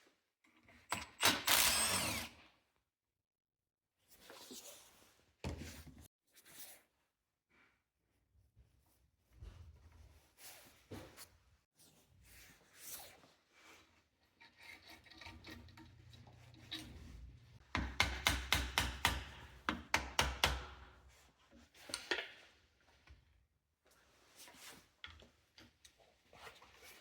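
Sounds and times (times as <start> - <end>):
hand scraping starter motor: 1.4 - 2.3.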